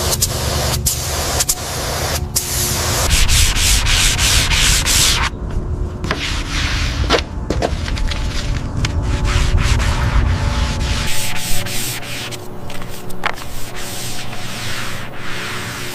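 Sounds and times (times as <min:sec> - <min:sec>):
sanding strokes: 0:00.0 - 0:05.3, 0:09.0 - 0:15.9
low motor hum: 0:00.1 - 0:15.9.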